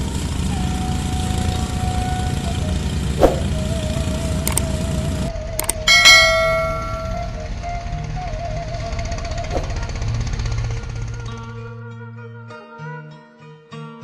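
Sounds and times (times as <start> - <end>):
small engine running: 0.0 - 11.8
background music melody: 0.0 - 14.0
ringing musical hit: 5.7 - 7.6.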